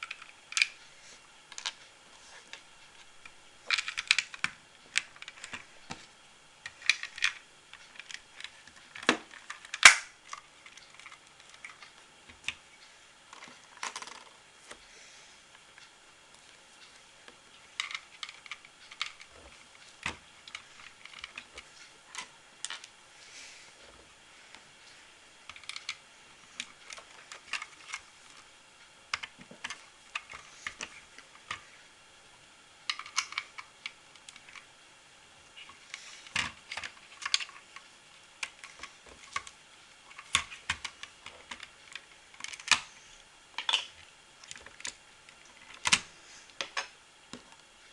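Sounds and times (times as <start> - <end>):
plastic bricks clicking: 3.7 - 6.0, 13.3 - 14.4, 36.2 - 37.6, 40.1 - 42.9, 43.6 - 46.0.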